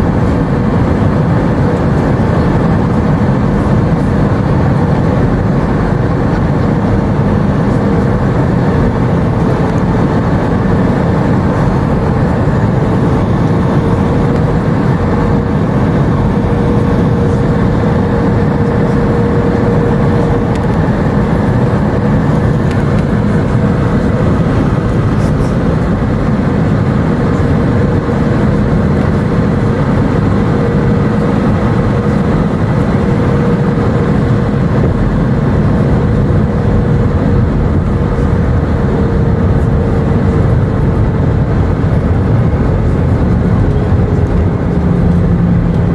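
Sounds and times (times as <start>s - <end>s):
faint hum: 0.0s - 45.9s
jet engine drone: 0.0s - 45.9s
rushing air: 0.0s - 45.9s.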